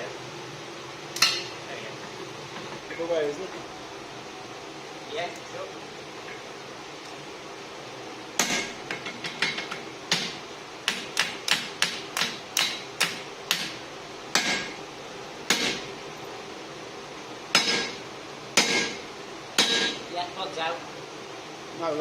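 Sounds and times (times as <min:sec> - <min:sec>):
hammer striking steel on anvil: 0:01.2 - 0:01.6, 0:08.4 - 0:13.8, 0:14.4 - 0:14.8, 0:15.5 - 0:15.9, 0:17.6 - 0:18.0, 0:18.6 - 0:19.0, 0:19.6 - 0:20.0.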